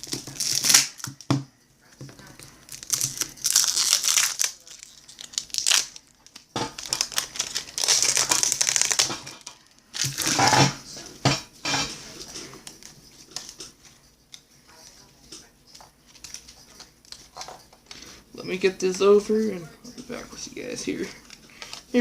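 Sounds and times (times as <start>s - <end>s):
wrapper crinkling and tearing: 0.0s - 1.3s, 2.4s - 10.6s.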